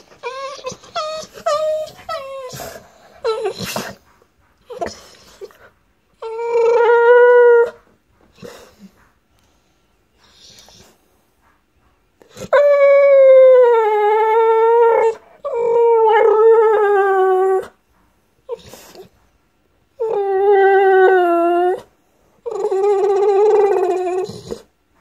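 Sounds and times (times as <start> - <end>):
dog howling: 0.0 - 3.7, 6.2 - 7.8, 12.4 - 17.8, 20.0 - 21.9, 22.5 - 24.7.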